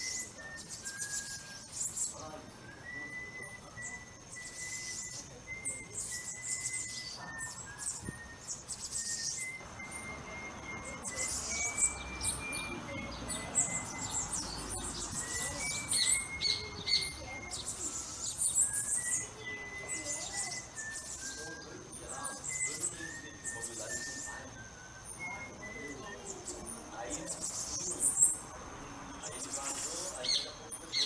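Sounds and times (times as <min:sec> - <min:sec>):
birds chirping and twittering: 0:00.0 - 0:31.0
thin high tone stepping in pitch: 0:09.6 - 0:18.2, 0:19.0 - 0:27.1.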